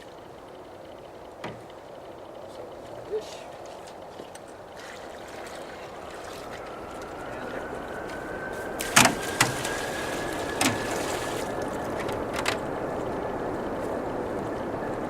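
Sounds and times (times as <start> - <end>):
water running into container: 8.7 - 12.1.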